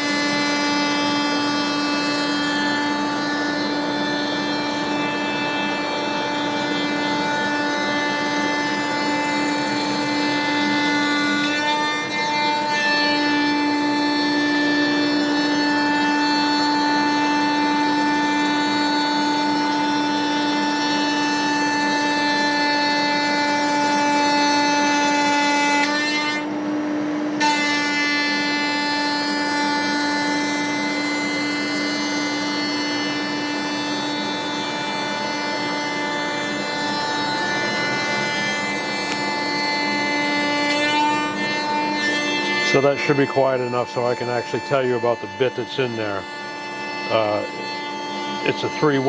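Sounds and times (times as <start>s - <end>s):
cutter shaving wood: 0.0s - 49.0s
spindle whine: 0.0s - 49.0s.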